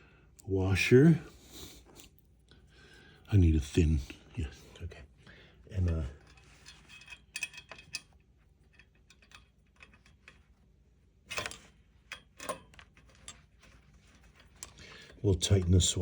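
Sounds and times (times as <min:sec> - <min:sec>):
small metal hardware clicking: 0:05.8 - 0:10.4, 0:11.3 - 0:13.4.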